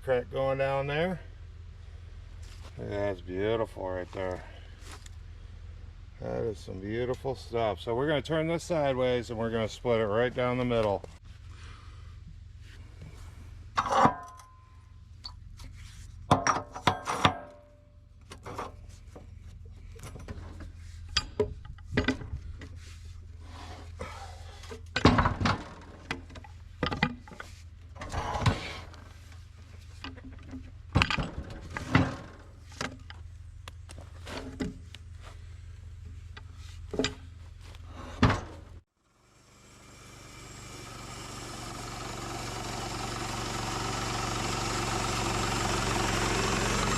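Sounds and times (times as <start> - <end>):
steady low hum: 0.0 - 16.3
sawmill engine: 39.1 - 46.9.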